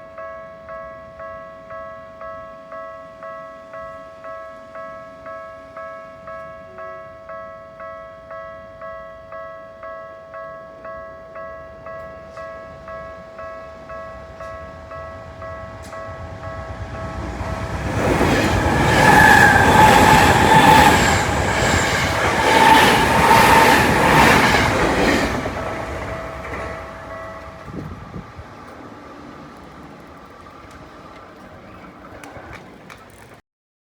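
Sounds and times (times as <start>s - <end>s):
level crossing warning bell: 0.0s - 33.1s
train rushing past: 11.8s - 33.4s
wheel clatter over rail joints: 13.8s - 33.4s.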